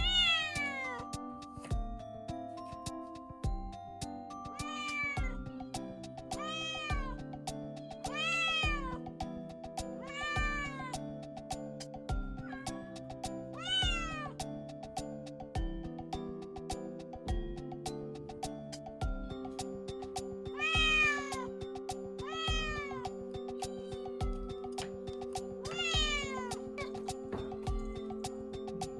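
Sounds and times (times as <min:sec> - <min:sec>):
kitten meowing: 0:00.0 - 0:01.0, 0:04.6 - 0:05.4, 0:08.1 - 0:09.0, 0:10.0 - 0:11.0, 0:13.6 - 0:14.3, 0:20.6 - 0:21.5, 0:25.7 - 0:27.1
background music: 0:00.0 - 0:28.9.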